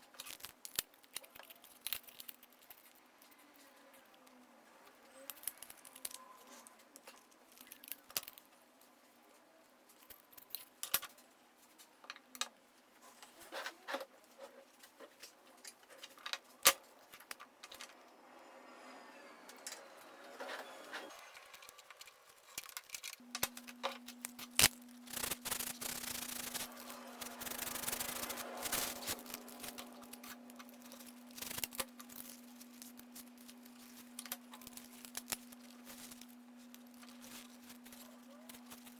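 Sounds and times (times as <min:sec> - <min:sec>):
clicks and taps on small parts: 0:00.2 - 0:03.4
steady low hum: 0:19.3 - 0:38.9
rubbing and scraping: 0:20.1 - 0:38.9.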